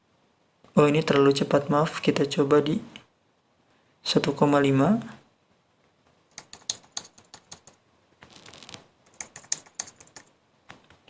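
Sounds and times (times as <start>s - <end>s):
keyboard key clicks: 6.3s - 7.8s, 9.1s - 10.3s.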